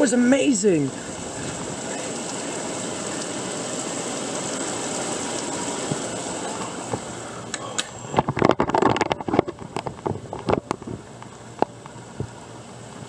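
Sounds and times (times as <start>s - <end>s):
heavy rain pouring: 0.0s - 13.0s
sharp cracks and knocks: 8.2s - 11.0s.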